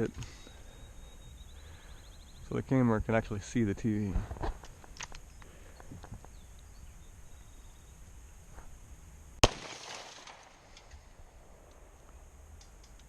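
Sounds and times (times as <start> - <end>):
pistol gunshot: 9.4 - 10.6.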